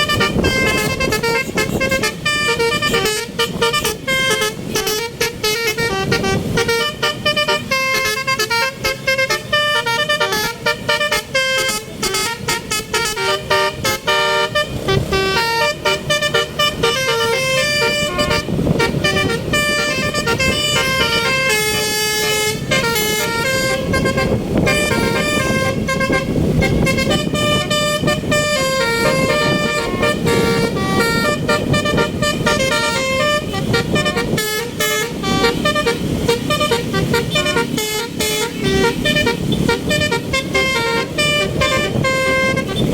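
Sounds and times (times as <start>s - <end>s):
moving bus rumble: 0.0s - 42.9s
multi-tone bus horn melody: 0.0s - 42.9s.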